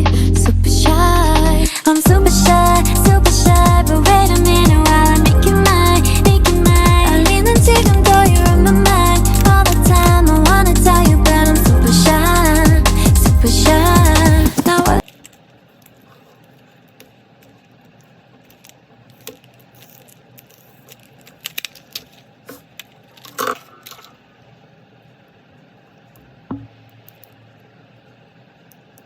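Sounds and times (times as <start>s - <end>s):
background pop music: 0.0s - 15.0s
packaging being handled: 15.0s - 24.1s
dull thump: 26.5s - 26.7s.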